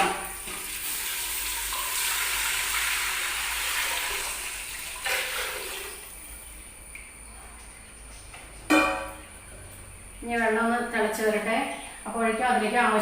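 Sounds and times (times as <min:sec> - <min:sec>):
water pouring into hot oil sizzling: 0:00.2 - 0:06.2.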